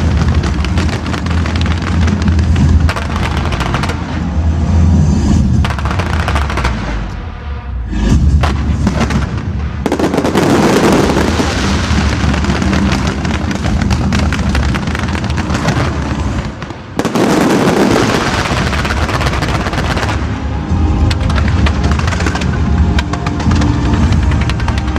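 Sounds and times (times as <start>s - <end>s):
firework crackle: 0.0s - 7.3s, 8.4s - 24.9s
firework shells booming: 8.4s - 20.2s.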